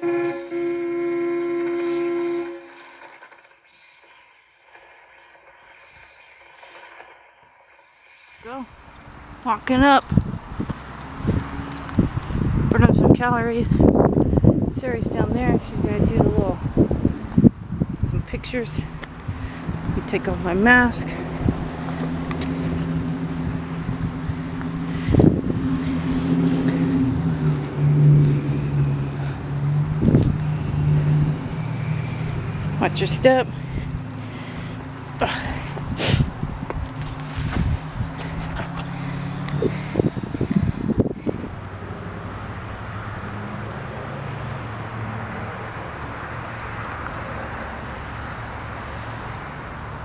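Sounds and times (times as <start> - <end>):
engine humming: 0.0 - 50.0
wind on microphone: 8.7 - 42.0.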